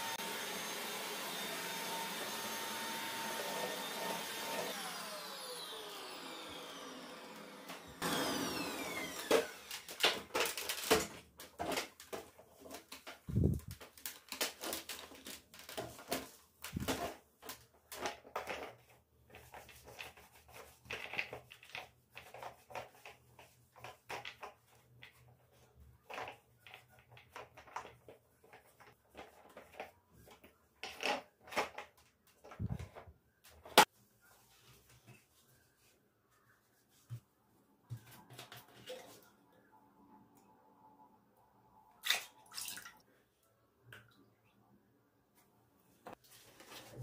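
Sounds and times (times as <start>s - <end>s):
household items clicking and rattling: 8.6s - 25.3s.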